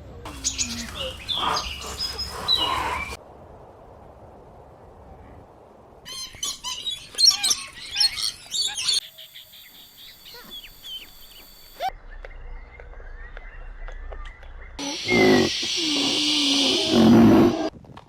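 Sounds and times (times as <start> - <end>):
birds chirping and calling: 0.3 - 3.2, 6.1 - 11.7, 14.8 - 17.7.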